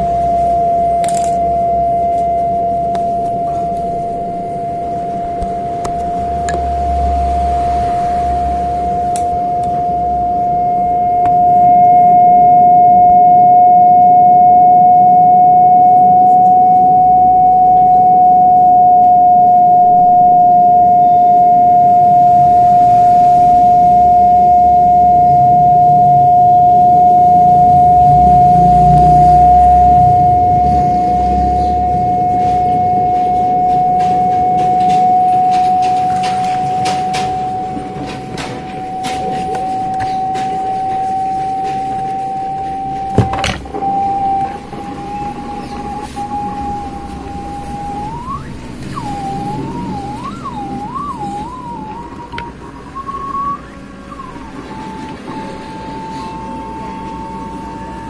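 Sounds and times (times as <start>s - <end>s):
low hum: 0.0s - 58.0s
speaker high-pitched whistle: 0.0s - 58.0s
clicks: 0.9s - 4.2s.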